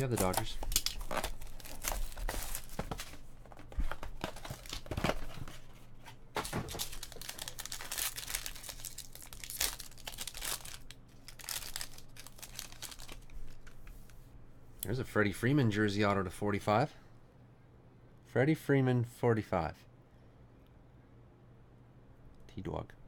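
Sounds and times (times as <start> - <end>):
card pack wrappers tearing: 0.0 - 5.6, 6.4 - 13.8
wrapper crinkling: 0.0 - 5.7, 6.4 - 13.9.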